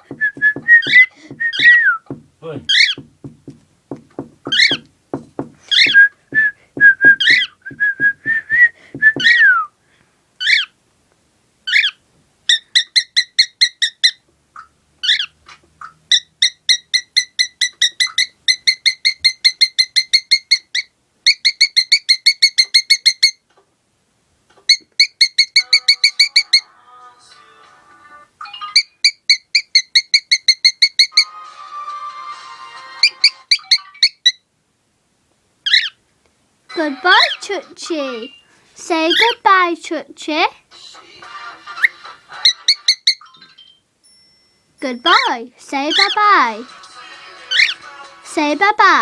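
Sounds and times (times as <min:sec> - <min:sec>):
quick taps: 0:00.0 - 0:09.4
cockatiel whistling: 0:00.1 - 0:03.0, 0:05.7 - 0:09.7
cockatiel chirping rapidly: 0:04.4 - 0:04.8, 0:35.6 - 0:36.0.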